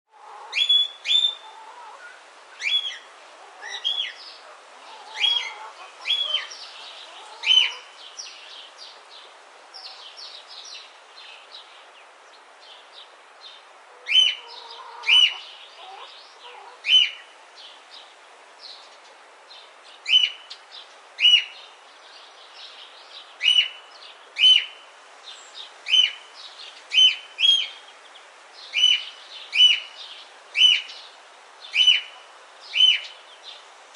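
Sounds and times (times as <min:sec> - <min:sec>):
faint birds chirping: 0:00.1 - 0:33.9.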